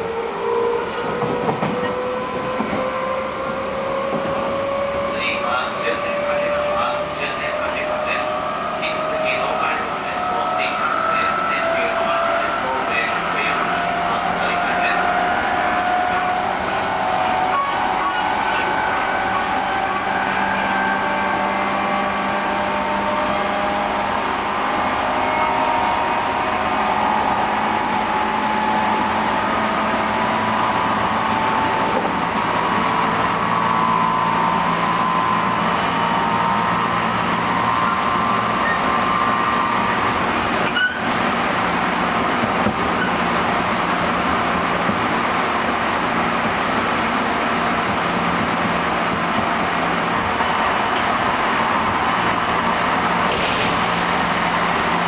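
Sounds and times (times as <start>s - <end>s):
train motor whine: 25.0s - 43.5s.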